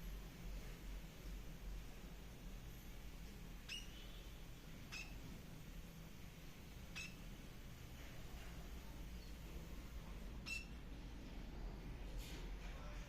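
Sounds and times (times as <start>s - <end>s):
faint low hum: 0.0s - 13.0s
small bird chirping: 3.6s - 5.4s, 6.8s - 7.4s, 9.1s - 9.5s, 10.4s - 10.8s.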